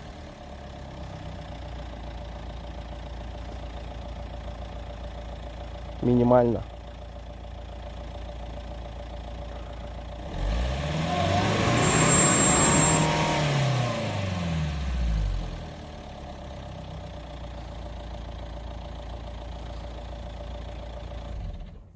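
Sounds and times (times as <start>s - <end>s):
car engine idling and revving: 0.0s - 21.9s
high whistle: 11.1s - 13.4s.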